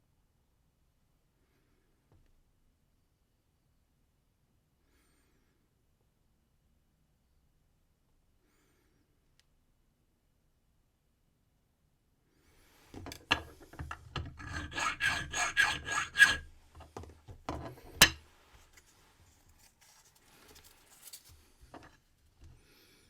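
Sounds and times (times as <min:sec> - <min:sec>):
file rasping on brass key: 0:13.1 - 0:16.9.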